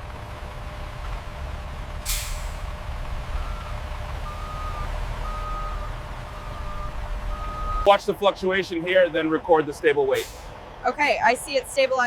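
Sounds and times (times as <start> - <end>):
truck engine rumbling: 0.0 - 12.0
air brakes hissing: 2.0 - 2.7, 10.2 - 10.6
reversing alarm beeping: 3.4 - 7.9.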